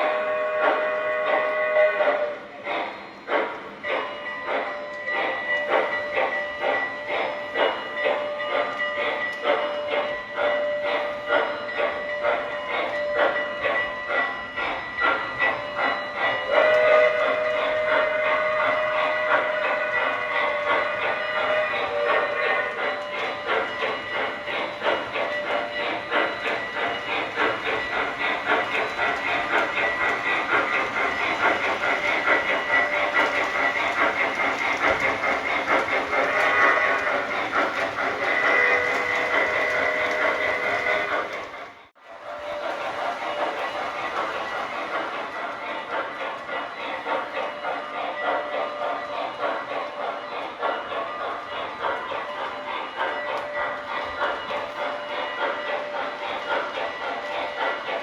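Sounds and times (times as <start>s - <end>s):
locomotive whistle blowing: 0.0s - 9.0s, 9.8s - 58.0s
clatter of train wheels on rails: 0.0s - 58.0s
model steam locomotive chuffing: 0.0s - 58.0s.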